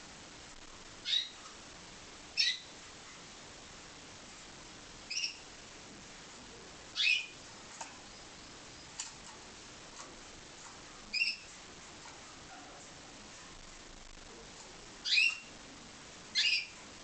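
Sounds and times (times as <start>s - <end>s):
canary chirping: 1.0s - 1.6s, 2.3s - 3.3s, 5.0s - 5.5s, 6.9s - 9.4s, 10.0s - 13.2s, 14.9s - 15.6s, 16.3s - 16.9s
faint small clicks: 8.9s - 10.8s.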